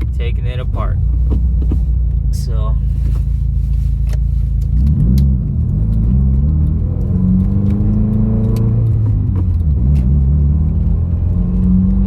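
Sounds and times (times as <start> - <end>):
car engine running while driving: 0.0 - 12.0.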